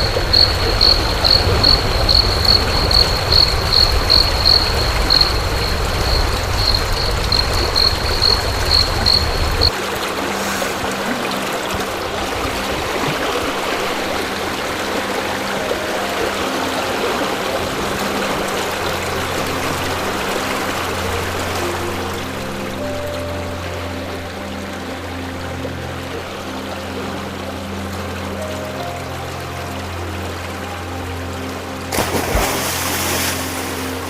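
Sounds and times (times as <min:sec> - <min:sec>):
insect chirping: 0:00.0 - 0:09.7
water running over rocks: 0:00.0 - 0:34.0.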